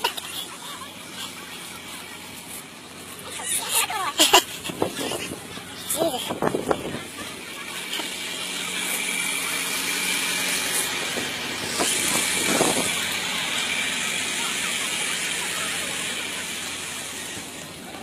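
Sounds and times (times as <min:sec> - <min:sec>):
car engine hum: 0:00.0 - 0:18.0
tyres hissing in snow: 0:07.2 - 0:17.6.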